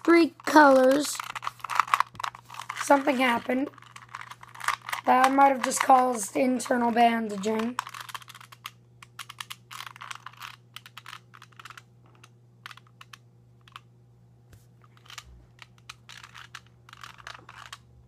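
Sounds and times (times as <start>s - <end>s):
plastic puzzle cube clicking: 7.4s - 13.8s, 14.9s - 17.8s.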